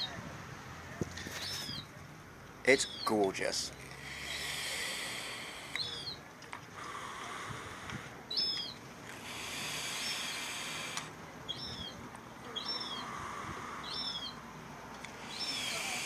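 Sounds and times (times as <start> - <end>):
soft steady hiss: 0.0 - 16.0
small bird chirping: 1.4 - 1.9, 5.6 - 6.2, 8.3 - 13.1, 13.8 - 14.4, 15.1 - 16.0.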